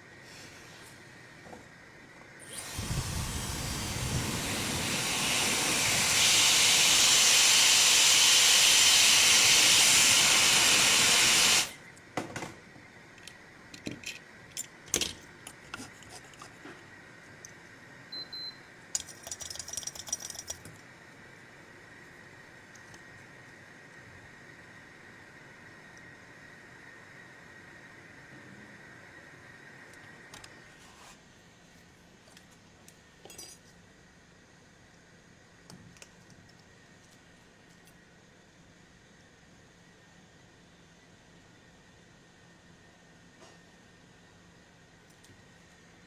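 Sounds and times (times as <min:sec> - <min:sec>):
air hissing from a nozzle: 0:02.5 - 0:11.8.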